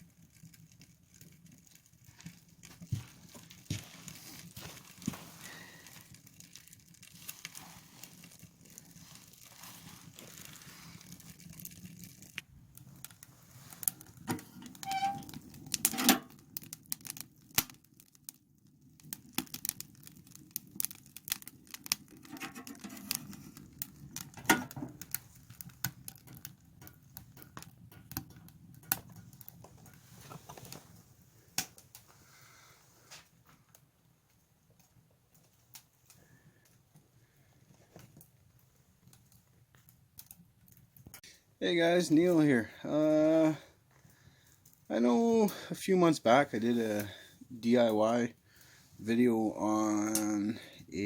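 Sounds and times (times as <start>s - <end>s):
wood fire crackling: 0.0s - 51.0s
rustling: 1.6s - 16.4s, 28.9s - 33.7s.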